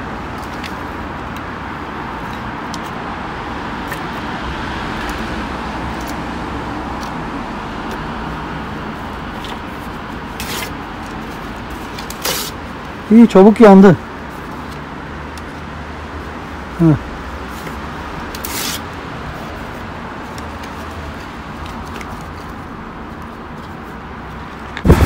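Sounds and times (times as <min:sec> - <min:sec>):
campfire burning and crackling: 0:24.8 - 0:25.0.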